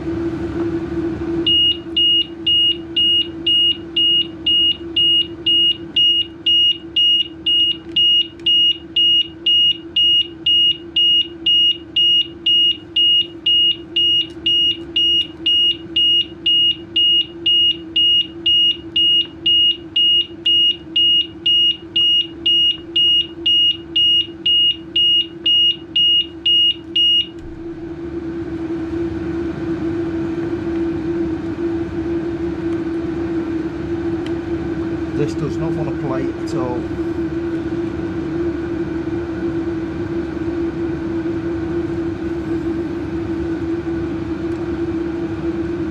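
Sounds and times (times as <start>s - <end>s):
steady low hum: 0.0s - 45.9s
scooter alarm beeping: 1.5s - 27.4s.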